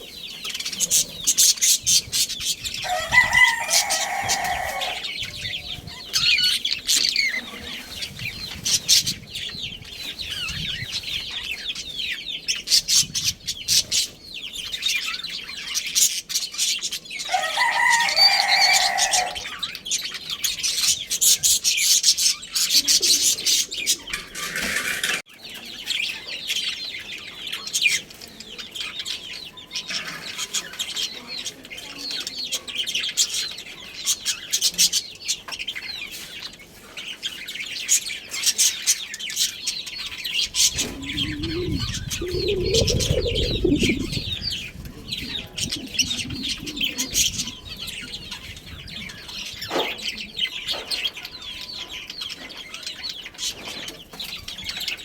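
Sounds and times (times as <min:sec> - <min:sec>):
budgies chirping and chattering: 0:00.0 - 0:55.0
rooster crowing: 0:02.8 - 0:05.3, 0:17.3 - 0:19.6.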